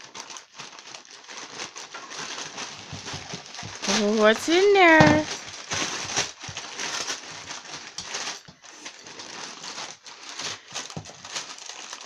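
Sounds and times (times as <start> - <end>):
wrapping paper crinkling and tearing: 0.0 - 12.0.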